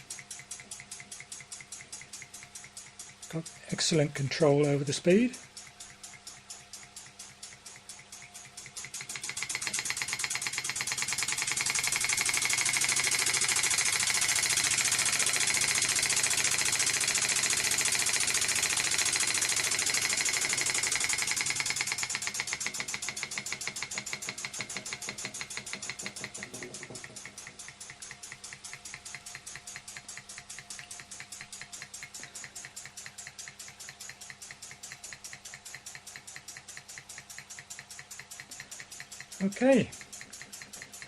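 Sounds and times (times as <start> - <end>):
model steam engine chuffing: 0.0 - 41.0.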